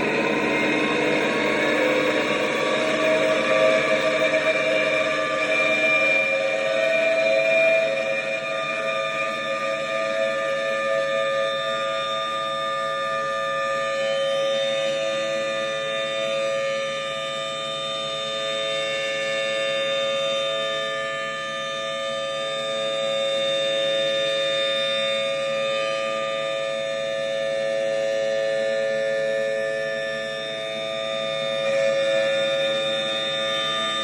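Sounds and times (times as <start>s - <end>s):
dual-tone siren wail: 0.0s - 34.0s.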